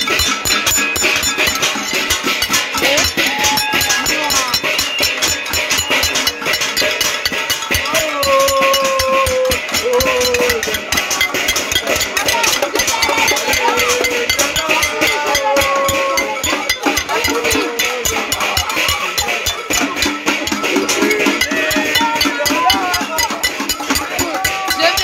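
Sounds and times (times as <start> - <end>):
pots and pans banging: 0.0 - 25.0
voices calling out: 0.0 - 25.0.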